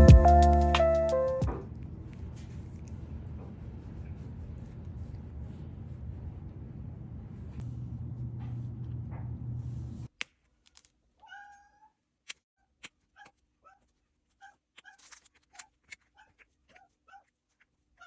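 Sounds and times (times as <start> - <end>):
low hum with noise: 1.4 - 10.1
cat meowing: 11.2 - 11.9.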